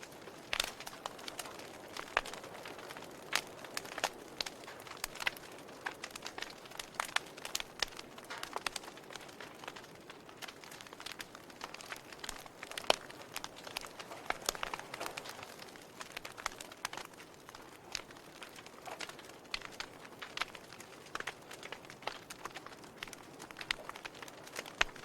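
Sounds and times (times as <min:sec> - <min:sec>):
wood fire crackling and popping: 0:00.0 - 0:25.0.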